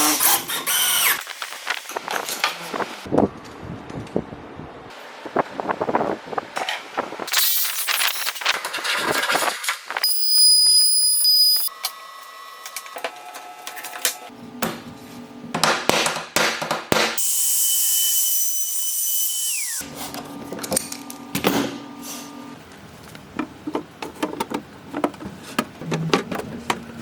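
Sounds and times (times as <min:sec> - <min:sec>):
woodworking power tools: 0:00.0 - 0:03.0, 0:17.2 - 0:22.6
high-pitched tool whine: 0:10.0 - 0:14.3.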